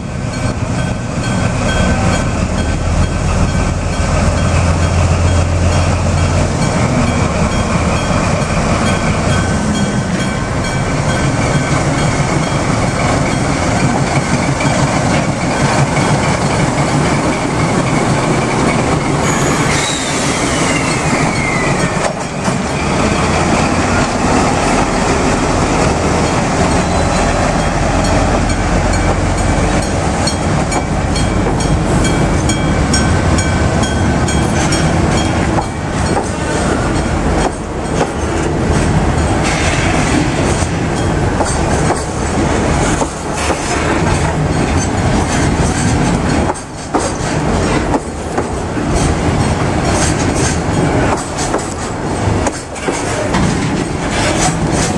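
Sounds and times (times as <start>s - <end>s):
train wheels clattering over rails: 0.3s - 54.9s
faint wheel squeal: 19.2s - 21.8s.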